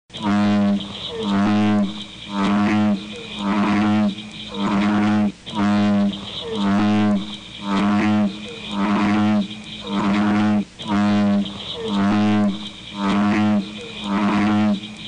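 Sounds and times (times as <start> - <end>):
snoring with croaking voice effect: 0.2 - 15.0.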